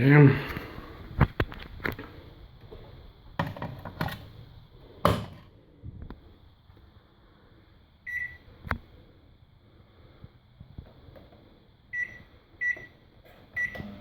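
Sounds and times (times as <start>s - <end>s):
microwave oven beeps: 8.0s - 8.5s, 11.9s - 14.0s.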